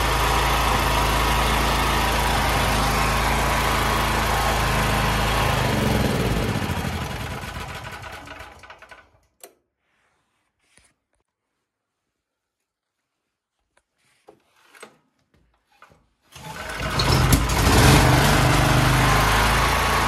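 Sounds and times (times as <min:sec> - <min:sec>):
generator engine running: 0:00.0 - 0:09.0, 0:16.4 - 0:20.0.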